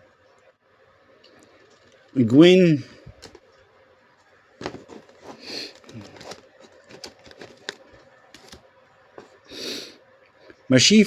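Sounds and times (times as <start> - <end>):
cards clicking and rustling: 3.1 - 3.5, 4.6 - 8.6.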